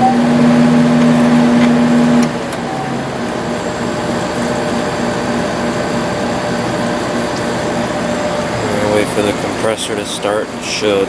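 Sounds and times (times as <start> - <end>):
humming tone: 0.0 - 9.0
air conditioner fans whirring: 0.0 - 11.0.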